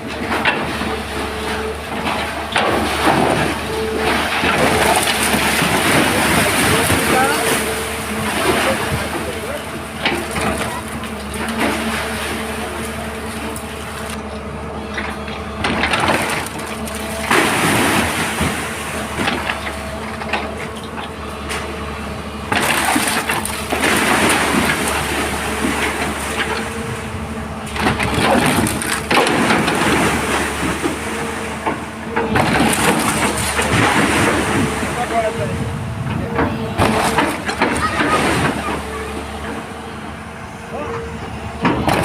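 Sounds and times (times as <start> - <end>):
excavator engine running: 0.0 - 42.0
loud crunching rushing bursts: 2.5 - 10.6.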